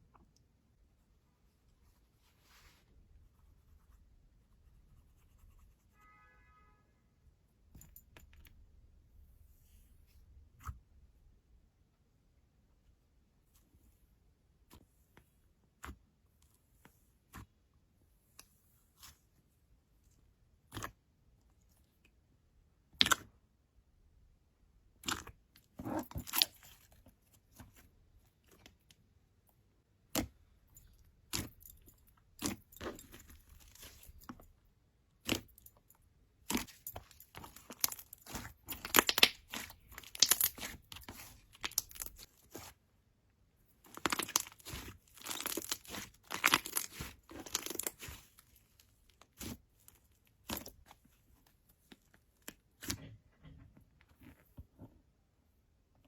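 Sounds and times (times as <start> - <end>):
slime crackling and popping: 36.4 - 42.6, 43.9 - 48.3.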